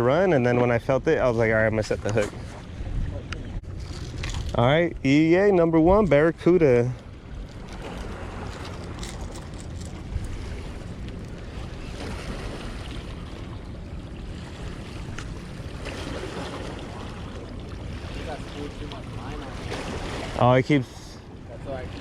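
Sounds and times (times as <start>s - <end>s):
wind on microphone: 1.4s - 6.5s.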